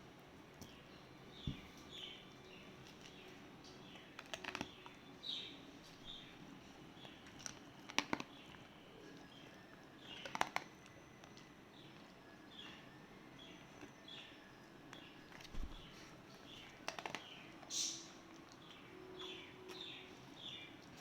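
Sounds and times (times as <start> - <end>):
dog chewing and crunching food: 1.6 - 14.2, 14.8 - 21.0
faint bird chirps: 8.2 - 21.0.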